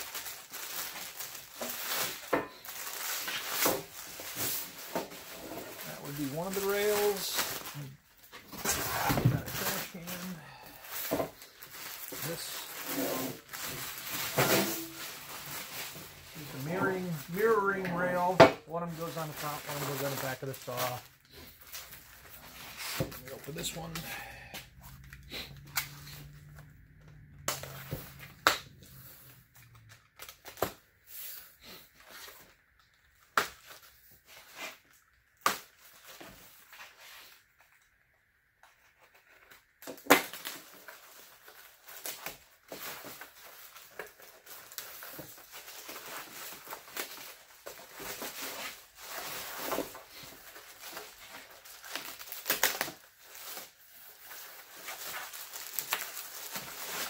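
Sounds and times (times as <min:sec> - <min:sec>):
cardboard rustling and tearing: 0:00.0 - 0:24.0, 0:38.9 - 0:57.0.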